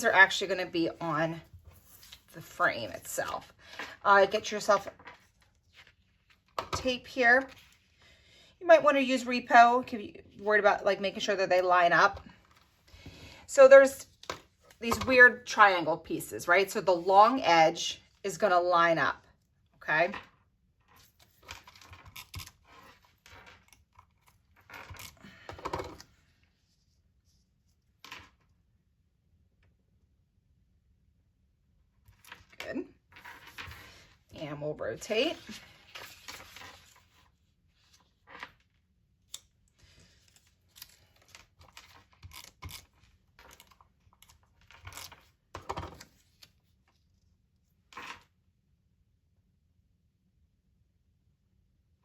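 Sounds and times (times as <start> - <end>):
paper rustling on tabletop: 4.7 - 6.6, 35.2 - 38.7.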